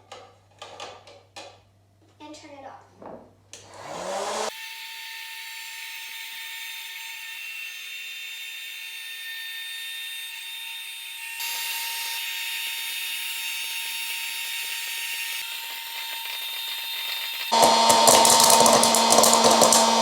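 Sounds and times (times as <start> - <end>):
popcorn popper fan whirring: 15.4 - 20.0.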